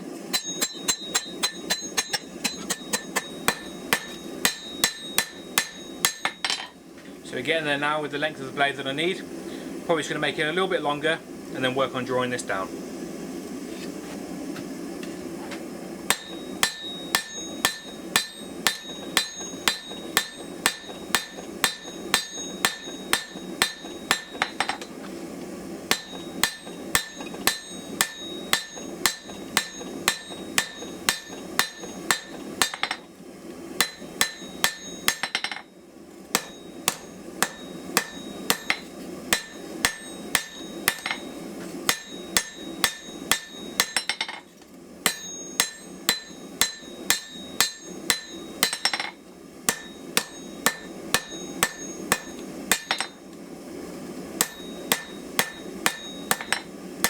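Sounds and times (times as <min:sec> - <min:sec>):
steady low hum: 0:00.0 - 0:57.0
hammer blows on hot steel: 0:00.2 - 0:06.8, 0:16.0 - 0:25.0, 0:25.8 - 0:33.1, 0:33.7 - 0:35.7, 0:36.3 - 0:44.3, 0:45.0 - 0:53.2, 0:54.4 - 0:56.8.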